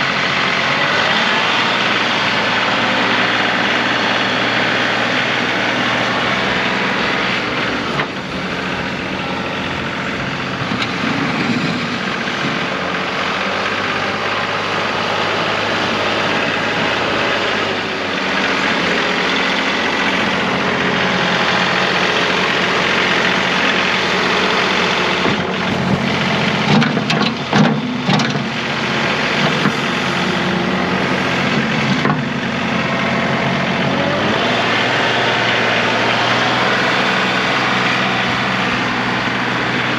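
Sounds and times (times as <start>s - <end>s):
diesel tractor engine running: 0.0s - 39.9s.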